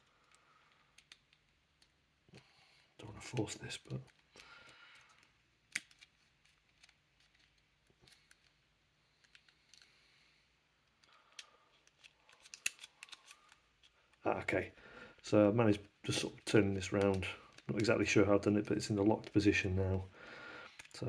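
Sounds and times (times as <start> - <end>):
wooden puzzle parts clicking and scraping: 0.0 - 2.1, 3.2 - 14.2, 16.1 - 19.5, 20.7 - 21.0.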